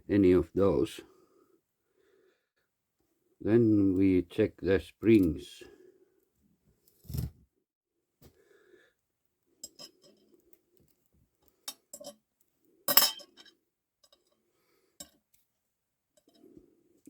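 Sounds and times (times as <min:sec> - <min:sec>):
small metal parts clinking: 0:12.9 - 0:14.2.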